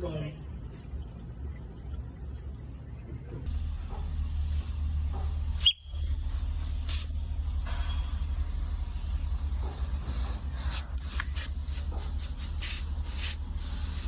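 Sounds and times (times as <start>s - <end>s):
hissing bursts: 3.5s - 14.0s.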